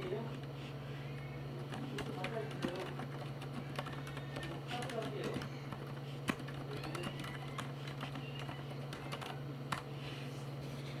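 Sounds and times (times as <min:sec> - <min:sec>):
steady low hum: 0:00.0 - 0:11.0
mechanical keyboard typing: 0:01.6 - 0:09.9.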